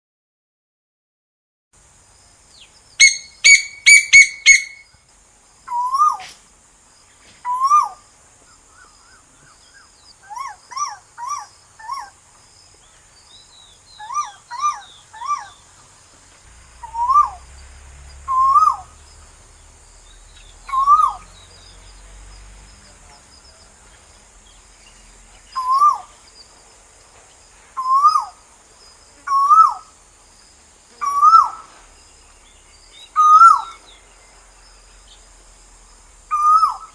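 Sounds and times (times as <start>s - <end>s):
high insect drone: 1.8s - 36.9s
koel calling: 3.0s - 4.8s, 14.0s - 15.6s, 20.7s - 21.4s, 31.0s - 31.7s.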